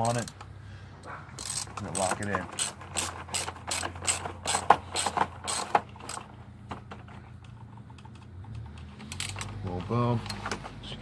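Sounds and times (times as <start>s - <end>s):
ratchet wrench clicking: 1.4s - 6.3s, 7.8s - 9.6s.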